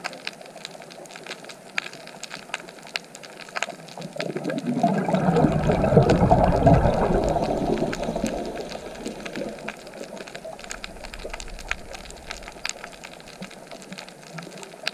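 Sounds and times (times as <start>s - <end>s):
dripping ticks: 0.0s - 14.9s
quiet hiss: 0.0s - 14.9s
water rushing and splashing: 3.7s - 14.9s.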